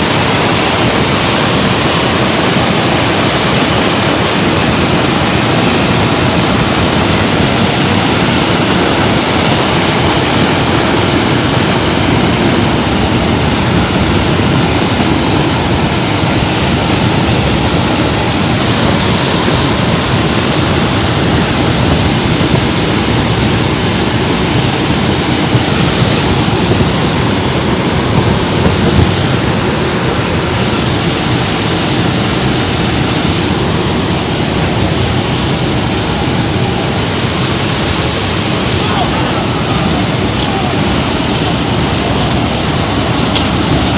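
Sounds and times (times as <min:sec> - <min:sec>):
aircraft cabin engine and airflow noise: 0:00.0 - 0:43.9.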